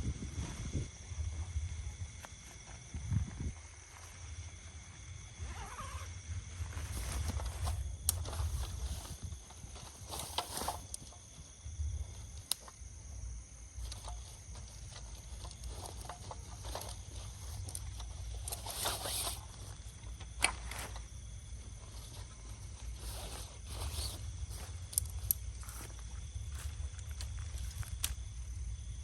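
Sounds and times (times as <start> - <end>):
wind rumble on microphone: 0.0 - 9.8
rustling: 5.4 - 12.8, 13.7 - 28.7.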